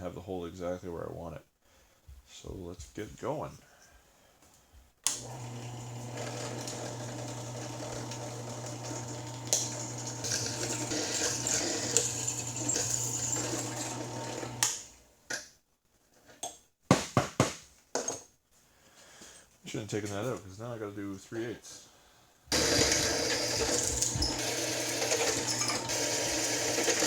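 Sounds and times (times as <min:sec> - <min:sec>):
drill press motor humming: 0:05.1 - 0:15.0, 0:22.5 - 0:27.0
drill bit scraping metal: 0:05.5 - 0:14.8, 0:22.5 - 0:27.0.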